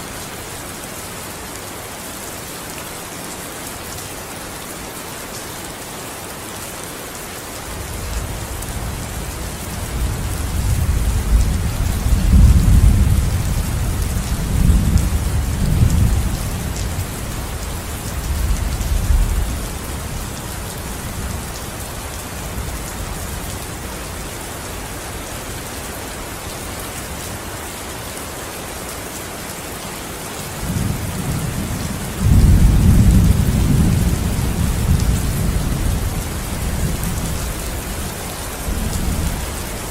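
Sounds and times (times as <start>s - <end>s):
steady rain hissing: 0.0s - 39.9s
low rolls of thunder: 32.1s - 36.2s.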